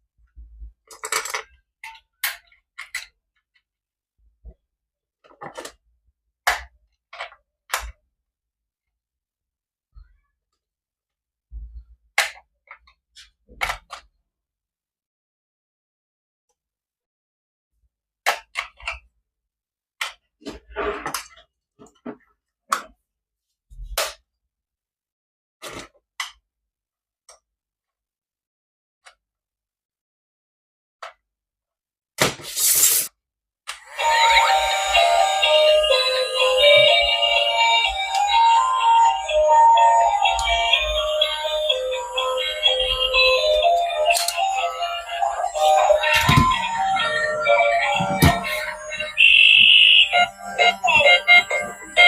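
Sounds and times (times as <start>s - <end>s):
plastic toys clicking and knocking: 0.8s - 3.7s, 5.2s - 8.1s, 18.2s - 19.2s.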